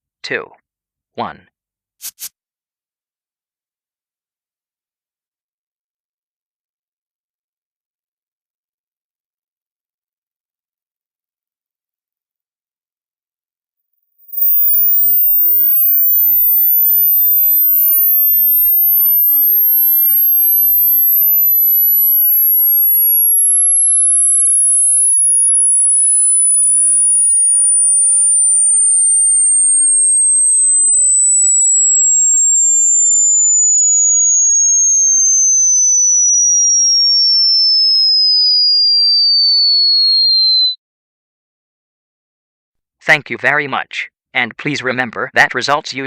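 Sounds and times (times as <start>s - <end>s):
sine tone sliding down: 14.2s - 40.8s.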